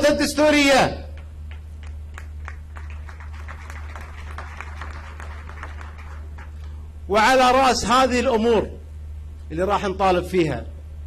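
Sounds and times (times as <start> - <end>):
steady low hum: 0.0 - 11.0
audience applauding: 1.5 - 6.8.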